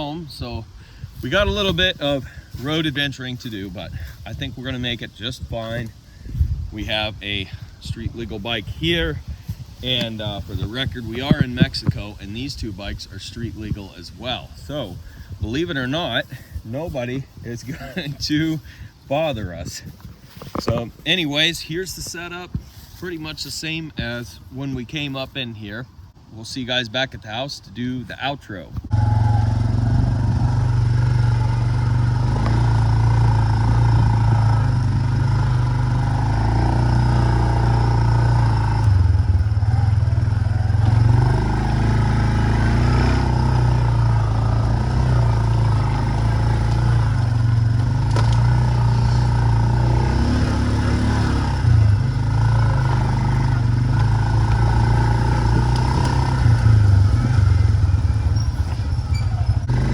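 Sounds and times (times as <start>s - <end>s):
atv engine riding: 0.0s - 24.9s, 28.6s - 59.9s.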